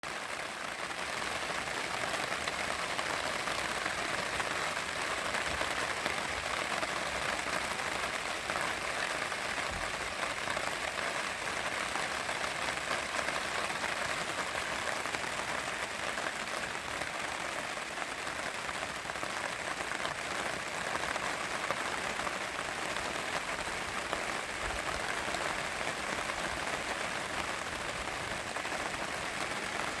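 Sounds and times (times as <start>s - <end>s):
rain pattering on a tarp: 0.0s - 30.0s.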